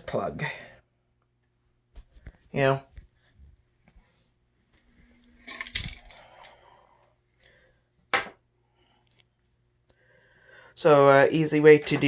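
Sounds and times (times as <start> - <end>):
small hard parts clinking: 5.2 - 6.6.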